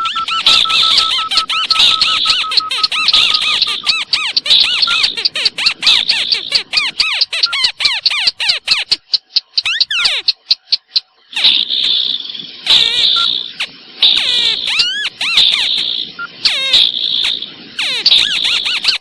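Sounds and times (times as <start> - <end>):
thin steady whistle: 0.0 - 4.0
bird-lure call squeaking chirps: 0.0 - 12.0, 12.7 - 19.0.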